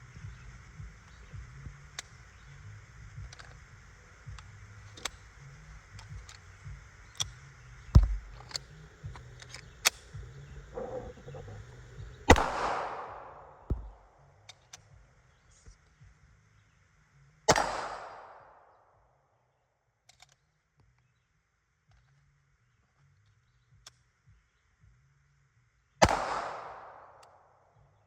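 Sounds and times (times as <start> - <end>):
faint gunshot cracks: 12.3 - 14.1, 17.5 - 18.6, 26.0 - 27.4
loud pistol shots: 12.3 - 14.1, 17.5 - 18.4, 26.0 - 27.1.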